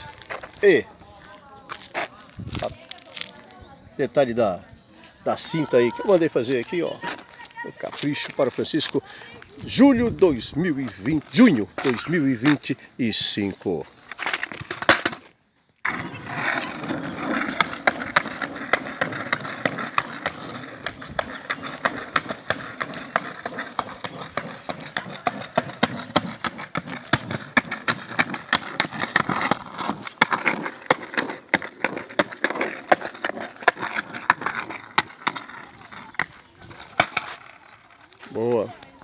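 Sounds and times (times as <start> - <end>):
skateboard wheels rumbling: 5.6 - 12.8, 13.4 - 39.0.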